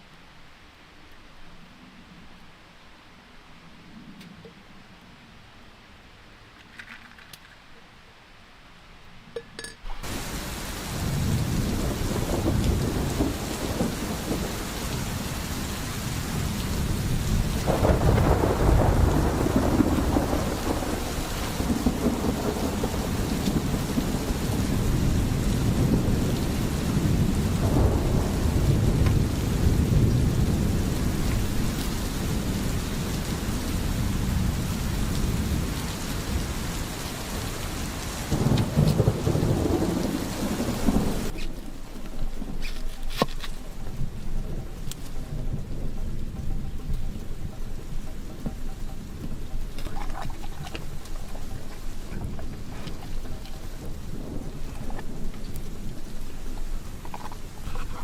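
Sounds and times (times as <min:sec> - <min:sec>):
heavy rain: 0:09.9 - 0:58.0
rolling thunder: 0:09.9 - 0:58.0.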